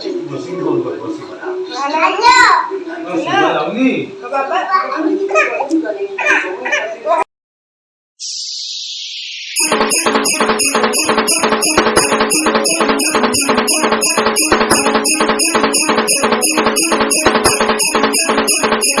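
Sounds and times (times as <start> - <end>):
music with fast beat: 9.6 - 19.0.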